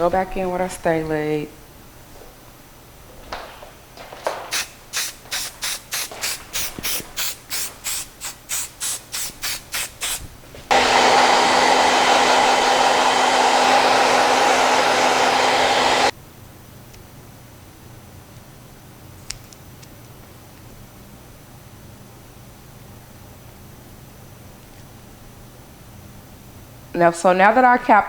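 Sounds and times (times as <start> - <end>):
spray bottle spritzes: 4.5 - 10.3
hair dryer running: 10.7 - 16.1.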